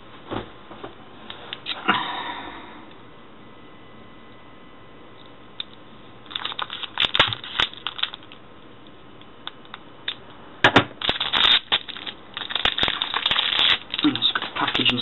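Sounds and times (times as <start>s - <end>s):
plastic packaging clicks and crackles: 6.3s - 8.4s, 11.0s - 15.0s.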